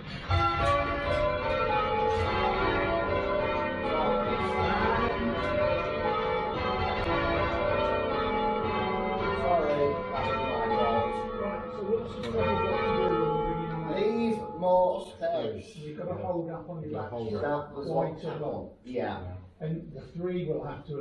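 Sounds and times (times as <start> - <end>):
church bells change ringing: 0.0 - 16.3.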